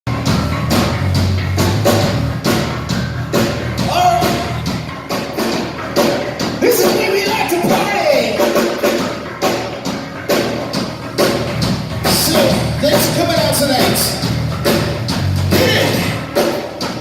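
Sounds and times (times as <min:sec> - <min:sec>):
rock band playing: 0:00.1 - 0:17.0
steady drum beat: 0:00.1 - 0:17.0
guitar or vocal line: 0:15.5 - 0:16.4.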